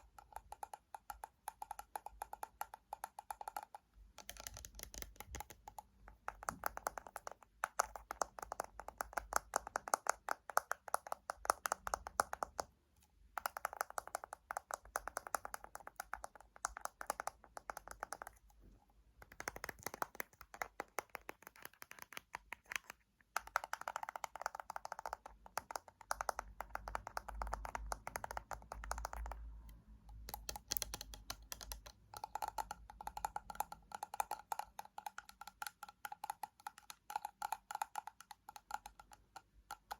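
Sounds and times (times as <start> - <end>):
fingernails tapping on hard object: 23.4 - 29.4.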